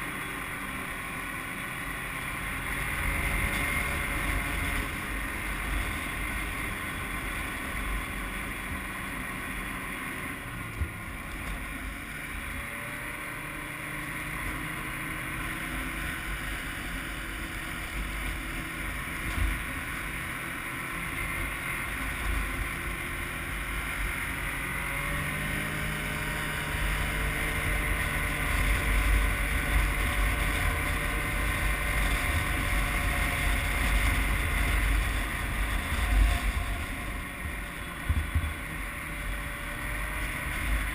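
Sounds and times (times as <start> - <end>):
snowmobile engine running: 0.0 - 40.9.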